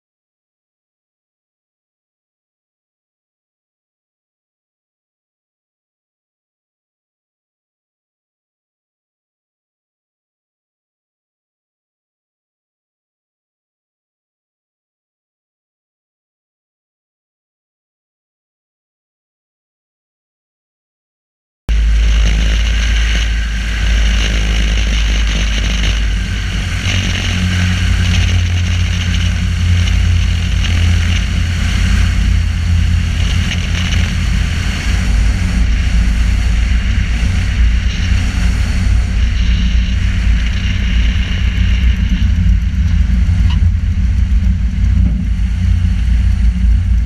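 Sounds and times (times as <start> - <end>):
airplane engine and propeller: 21.7 - 47.0
wind rush on camera: 21.7 - 47.0.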